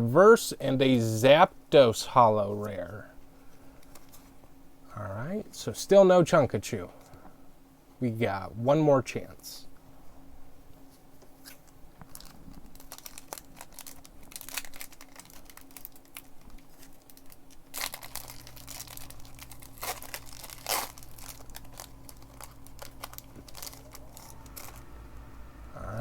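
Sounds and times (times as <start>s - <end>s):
low steady hum: 0.0s - 26.0s
cards rustling: 10.9s - 24.9s
foil wrapper tearing and crinkling: 11.4s - 24.8s.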